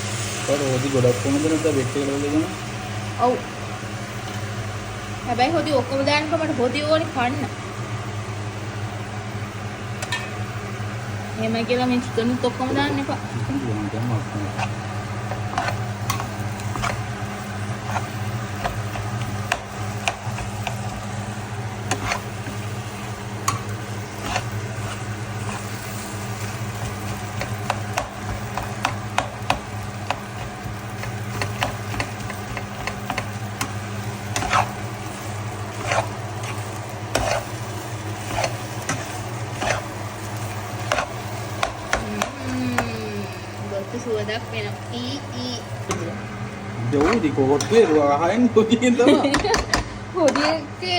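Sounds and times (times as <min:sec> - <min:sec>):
food sizzling: 0:00.0 - 0:50.9
utensil scraping a pan: 0:14.4 - 0:22.8, 0:23.4 - 0:42.4, 0:46.9 - 0:48.0, 0:50.2 - 0:50.6.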